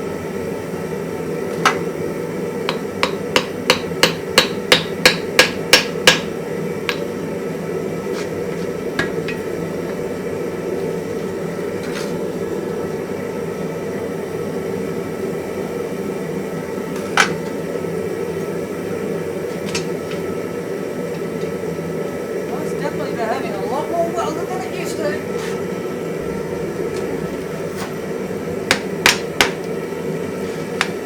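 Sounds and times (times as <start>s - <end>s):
steady low hum: 0.0s - 31.0s
hammer striking hot iron: 2.6s - 7.2s, 8.9s - 9.6s, 26.2s - 29.9s.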